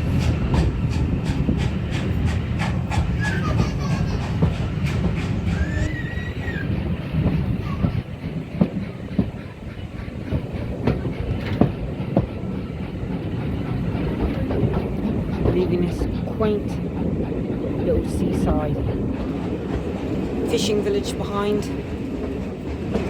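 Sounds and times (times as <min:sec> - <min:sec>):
train low rumble: 0:00.0 - 0:23.0.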